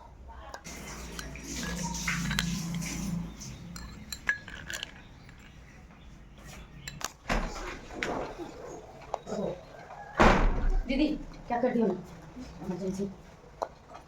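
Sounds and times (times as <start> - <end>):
metal utensils and dishes clinking: 0.6 - 5.9, 6.5 - 9.6.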